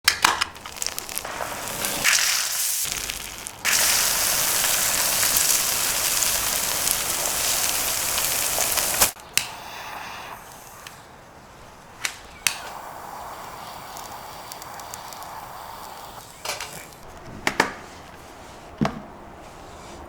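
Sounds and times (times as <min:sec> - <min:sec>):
campfire crackling and popping: 0:00.1 - 0:09.2, 0:11.9 - 0:17.0
dense crackling hiss: 0:00.4 - 0:17.1.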